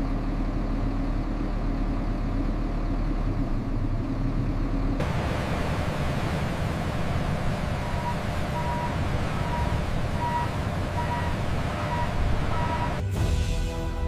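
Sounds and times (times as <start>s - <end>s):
heavy vehicle engine rumbling: 0.0s - 14.0s
faint beeps: 7.8s - 13.0s
music: 13.0s - 14.0s.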